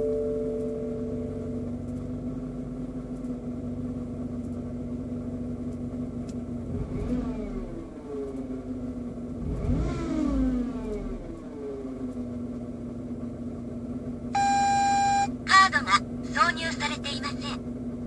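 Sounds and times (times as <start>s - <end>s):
car engine whining and revving: 0.0s - 18.0s
two-tone chime: 14.4s - 15.3s.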